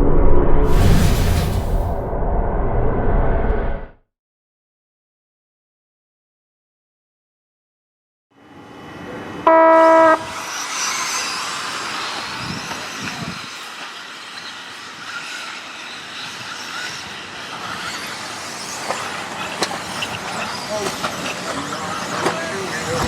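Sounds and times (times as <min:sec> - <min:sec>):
rc cars whining: 0:10.3 - 0:23.0.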